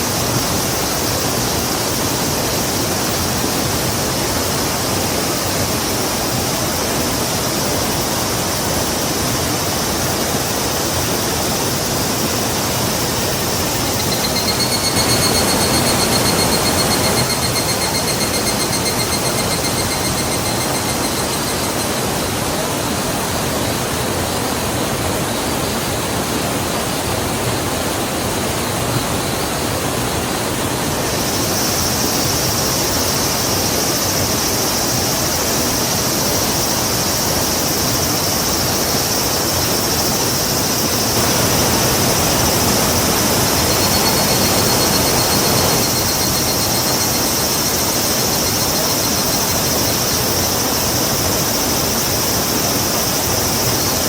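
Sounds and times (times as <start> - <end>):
river rushing: 0.0 - 54.0
steady high hiss: 0.0 - 54.0
high fast-pulsing tones: 12.3 - 22.4, 41.1 - 49.9.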